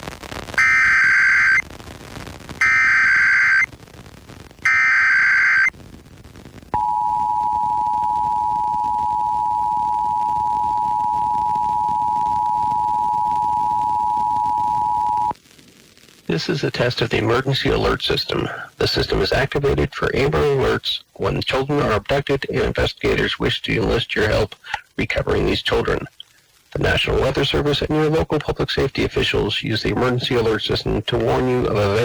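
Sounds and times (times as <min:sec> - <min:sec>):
harsh digital warble bursts: 0:00.6 - 0:01.6, 0:02.6 - 0:03.7, 0:04.6 - 0:05.7
two-tone attention signal: 0:06.8 - 0:15.3.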